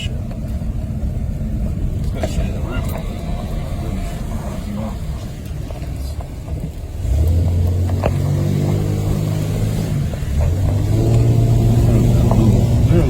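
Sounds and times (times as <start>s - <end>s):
truck engine drone: 0.0s - 13.0s.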